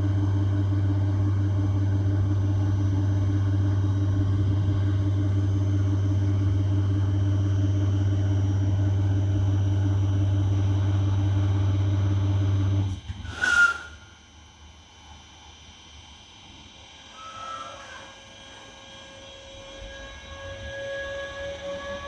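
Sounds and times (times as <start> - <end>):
train low hum: 0.0 - 14.2
short high squeak: 13.2 - 14.2.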